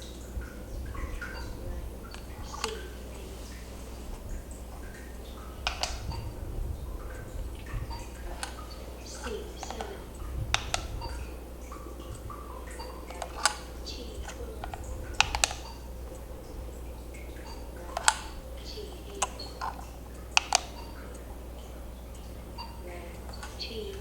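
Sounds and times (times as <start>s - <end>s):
low steady hum: 0.0s - 24.0s
sharp clicks and taps: 4.1s - 6.3s, 7.2s - 24.0s.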